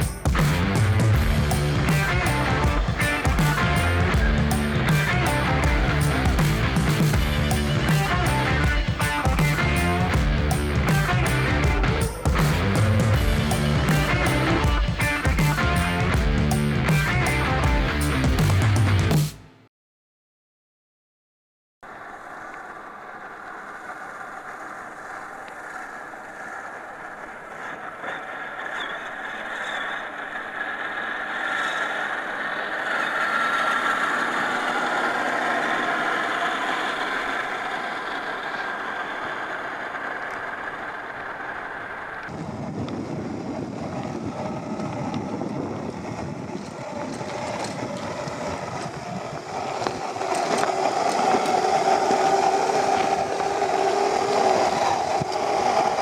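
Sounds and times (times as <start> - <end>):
tyres on terrain: 0.0 - 19.3, 21.8 - 56.0
electric motor whine: 42.8 - 56.0.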